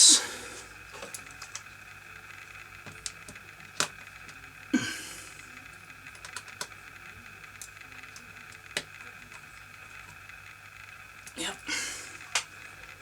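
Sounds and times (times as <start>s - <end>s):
plastic parts clicking together: 6.1s - 6.8s.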